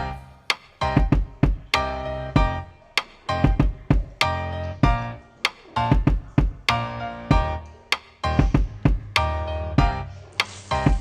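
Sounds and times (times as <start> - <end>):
drum hits: 0.0 - 1.8, 2.4 - 4.2, 5.9 - 6.7, 8.3 - 9.2, 9.8 - 11.0
rhythmic background music: 0.0 - 11.0.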